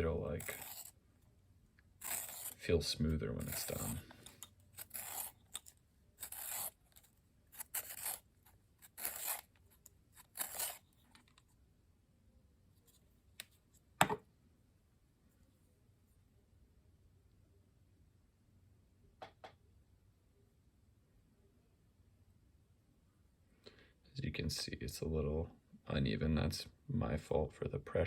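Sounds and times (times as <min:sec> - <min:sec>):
pencil sharpener scraping: 0:00.0 - 0:01.0, 0:02.0 - 0:11.4.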